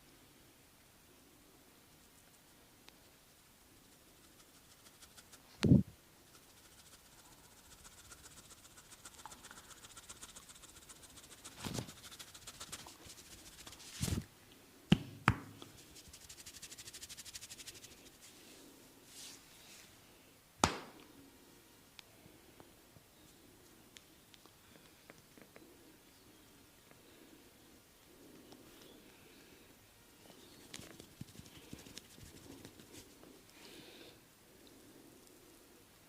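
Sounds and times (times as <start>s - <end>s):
fast rubbing on skin: 3.8s - 5.5s, 6.2s - 14.2s, 15.7s - 18.3s, 30.6s - 33.2s
hands smacking: 20.6s - 21.1s.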